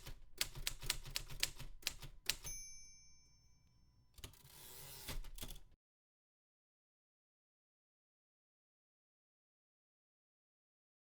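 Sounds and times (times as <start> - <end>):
typewriter bell ding: 2.3 - 5.1.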